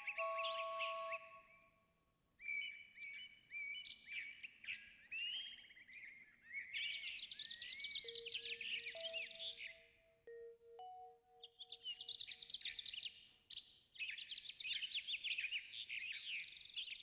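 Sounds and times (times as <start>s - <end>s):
songbirds chirping and singing: 0.0s - 1.6s, 2.4s - 17.0s.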